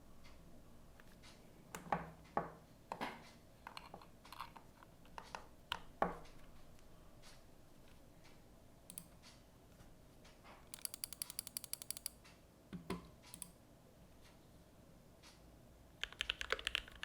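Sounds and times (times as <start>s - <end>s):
mechanical keyboard keystrokes: 16.0s - 17.0s.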